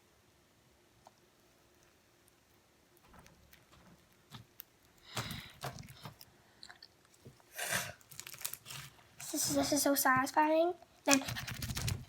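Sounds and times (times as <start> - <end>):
sticky clicks and crackling pops: 1.0 - 7.2, 8.0 - 8.9, 11.0 - 12.0.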